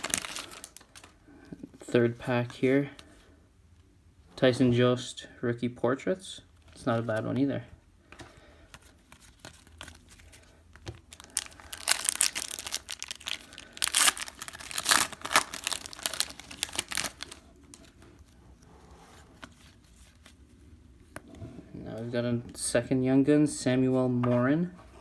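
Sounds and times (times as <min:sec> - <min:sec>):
foil wrapper tearing and crinkling: 0:00.0 - 0:01.1, 0:11.1 - 0:17.4.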